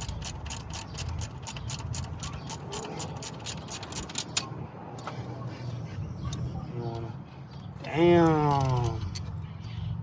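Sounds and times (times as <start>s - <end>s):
socket ratchet clicking: 0.0s - 4.5s.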